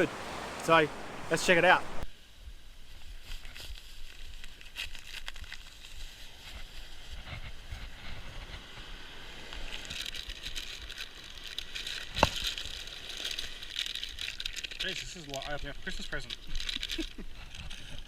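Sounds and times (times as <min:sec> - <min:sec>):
rustling of packaging: 0:03.1 - 0:07.1, 0:09.5 - 0:18.0
wind rumble on microphone: 0:05.9 - 0:11.0.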